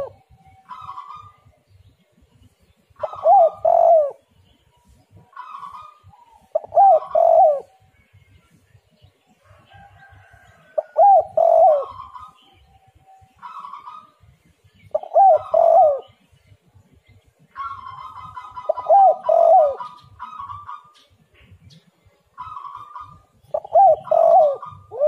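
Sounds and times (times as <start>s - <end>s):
dove cooing: 0.0s - 1.5s, 3.0s - 4.3s, 5.2s - 7.8s, 10.2s - 12.6s, 14.9s - 16.2s, 17.5s - 21.5s, 22.4s - 25.0s.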